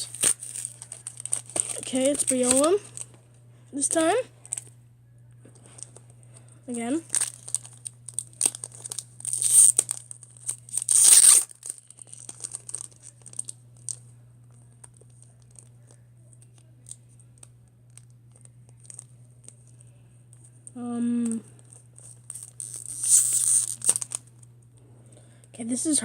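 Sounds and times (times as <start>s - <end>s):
foil wrapper crinkling: 0.0s - 3.1s, 7.0s - 14.0s, 14.6s - 19.8s, 21.1s - 24.4s
foil wrapper ripping: 0.0s - 3.1s, 7.1s - 14.0s, 21.2s - 24.3s.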